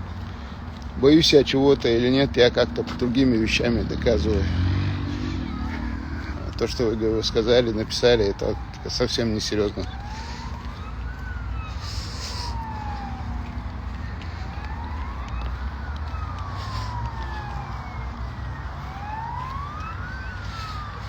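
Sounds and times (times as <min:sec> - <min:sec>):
siren wailing: 0:01.1 - 0:21.0.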